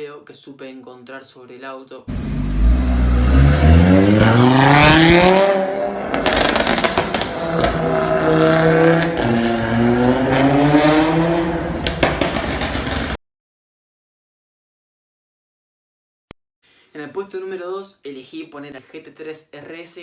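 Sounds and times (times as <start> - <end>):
exhaust crackles and pops: 2.1 - 9.4, 11.8 - 13.2
car engine accelerating hard: 2.1 - 13.2.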